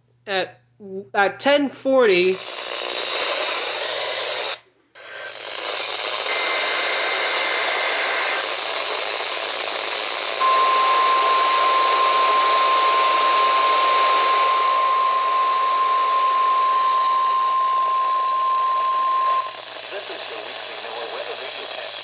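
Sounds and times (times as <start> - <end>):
radio static hiss: 2.1 - 22.0
steady warning alarm tone: 10.4 - 19.8
two-tone digital data burst: 10.4 - 20.4.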